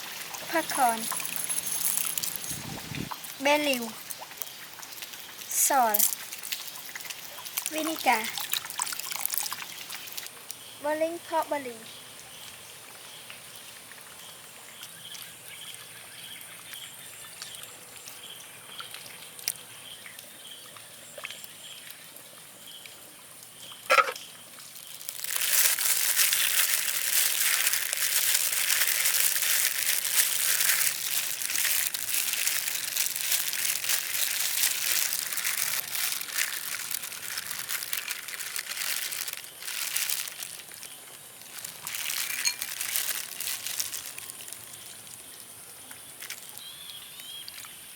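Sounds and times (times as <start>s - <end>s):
pork sizzling and crackling in pot: 0.0s - 11.6s, 23.7s - 45.2s.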